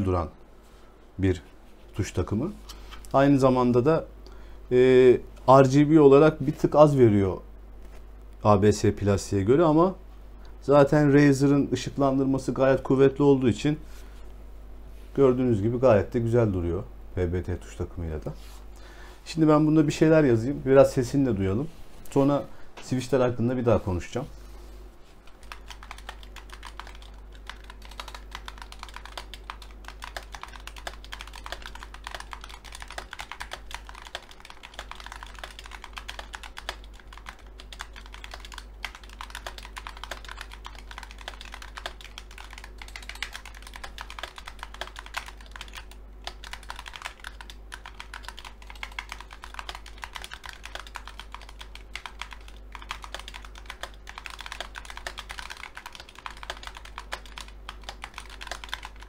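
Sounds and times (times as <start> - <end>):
fast keyboard typing: 25.2 - 59.0.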